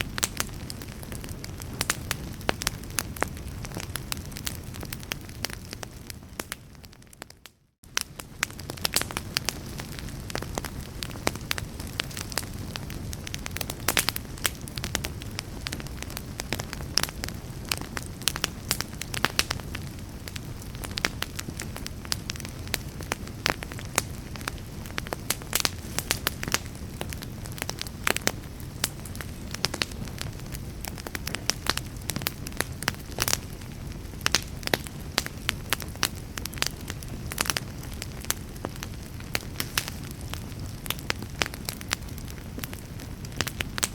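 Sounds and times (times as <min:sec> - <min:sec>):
wood fire crackling: 0:00.0 - 0:43.9.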